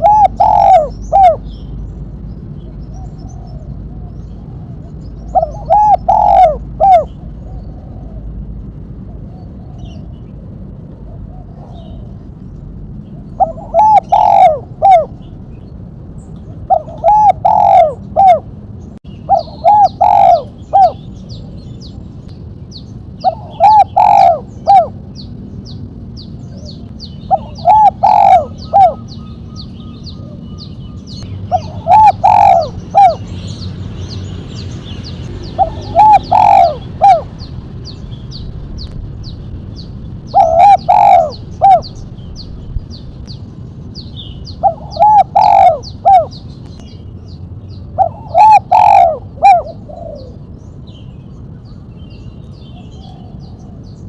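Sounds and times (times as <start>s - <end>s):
dove cooing: 0.0s - 1.6s, 2.9s - 8.4s, 13.2s - 15.3s, 16.6s - 18.5s, 19.2s - 21.6s, 23.2s - 25.2s, 26.4s - 33.4s, 35.4s - 37.5s, 40.3s - 42.4s, 44.4s - 46.4s, 48.0s - 50.4s.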